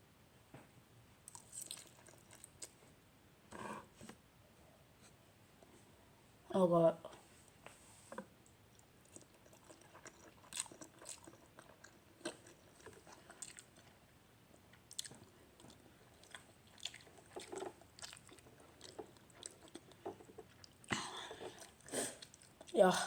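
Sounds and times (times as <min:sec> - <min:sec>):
person chewing: 0:01.3 - 0:02.8, 0:08.7 - 0:14.0, 0:14.7 - 0:22.7.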